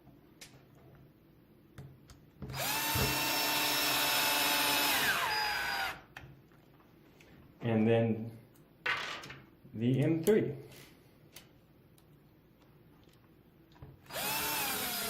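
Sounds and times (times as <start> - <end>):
power drill whine: 2.5 - 6.1, 14.1 - 15.0.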